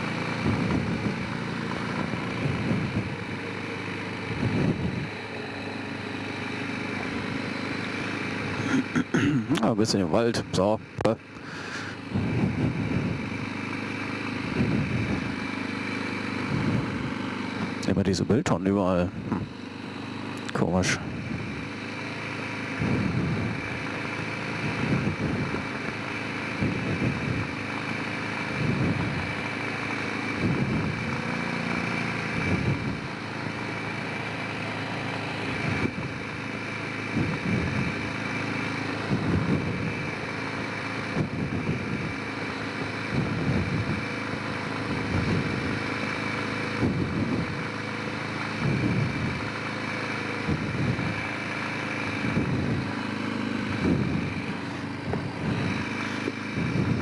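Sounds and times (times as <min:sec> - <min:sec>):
quad engine running: 0:00.0 - 0:57.0.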